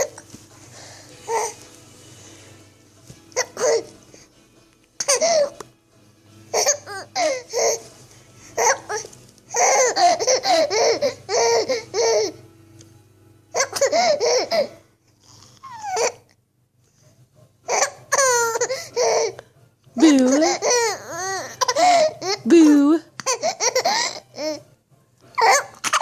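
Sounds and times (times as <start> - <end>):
baby laughing: 3.3 - 4.0, 5.0 - 5.6, 6.5 - 7.9, 8.6 - 12.4, 13.5 - 14.8, 15.6 - 16.3, 17.7 - 19.4, 20.0 - 22.5, 23.2 - 24.6, 25.4 - 26.0.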